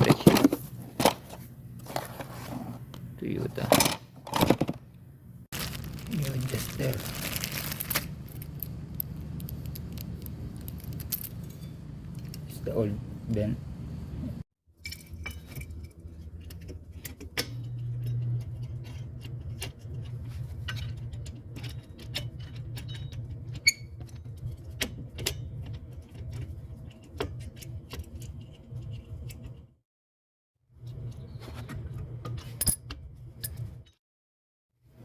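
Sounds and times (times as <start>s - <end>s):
steady low hum: 0.3s - 14.4s.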